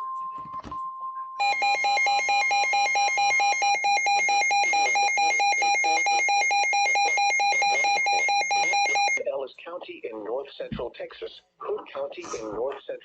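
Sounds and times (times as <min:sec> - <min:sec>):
rapid pulsed alarm beeping: 0:01.4 - 0:09.2
steady warning alarm tone: 0:01.4 - 0:09.2.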